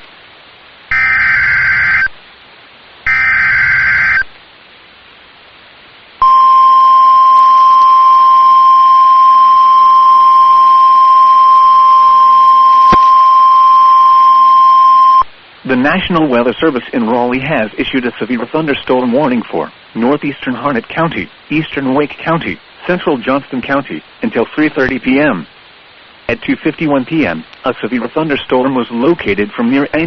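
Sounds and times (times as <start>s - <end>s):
digital data bursts: 0.9s - 2.2s, 3.1s - 4.3s
steady warning alarm tone: 0.9s - 2.2s, 3.1s - 4.3s, 6.2s - 15.2s.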